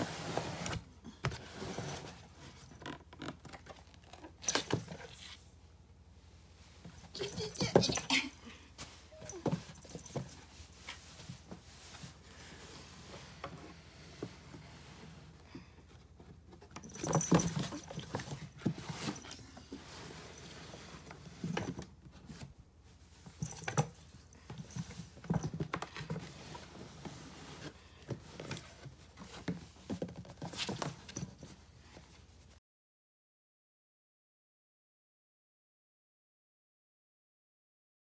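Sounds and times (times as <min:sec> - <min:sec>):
kitten paws pattering and scuffling: 0:06.4 - 0:14.7, 0:16.0 - 0:32.6.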